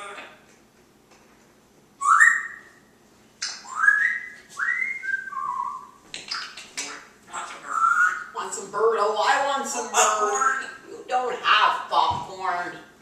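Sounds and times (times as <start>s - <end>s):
parrot whistling: 2.0s - 6.6s, 7.6s - 8.4s, 10.1s - 10.8s
parrot harsh raspy sounds: 6.3s - 8.4s, 9.7s - 11.0s.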